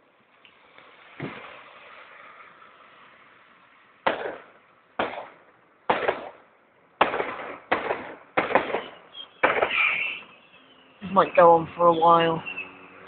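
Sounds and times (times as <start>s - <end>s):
fireworks bangs: 1.1s - 2.5s, 4.0s - 6.4s, 7.0s - 11.4s.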